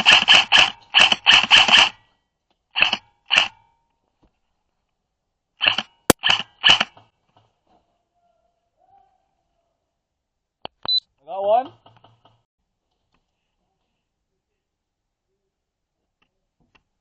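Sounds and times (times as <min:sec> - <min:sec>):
airsoft gun firing: 0:00.0 - 0:02.0.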